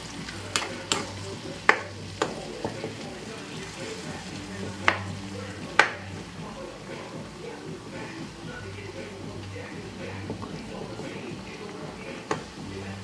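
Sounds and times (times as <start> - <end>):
food sizzling in a frying pan: 0.0 - 8.4.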